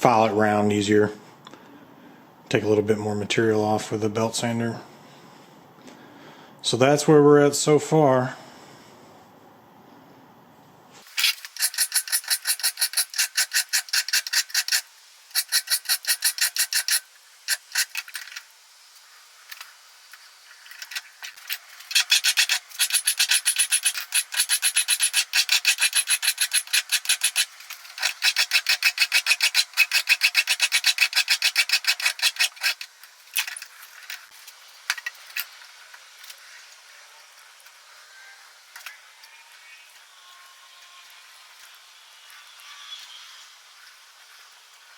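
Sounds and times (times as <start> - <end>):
hand file rasping on steel: 11.6 - 18.0, 21.9 - 32.8.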